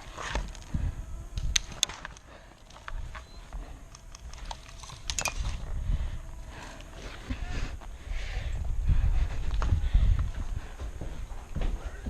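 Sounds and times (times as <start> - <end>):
small crackles: 0.0 - 7.4
sharp clicks: 1.4 - 5.6.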